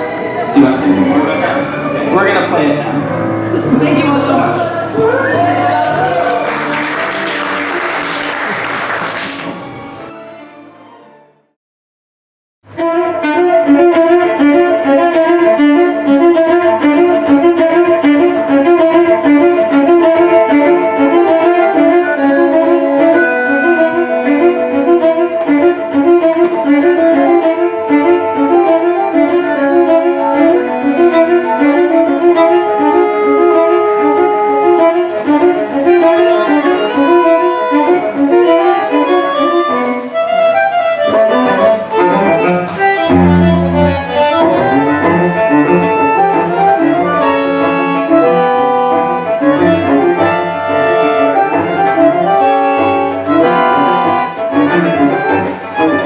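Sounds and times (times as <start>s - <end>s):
bandoneon and cello playing tango: 0.0s - 8.0s, 12.7s - 56.0s.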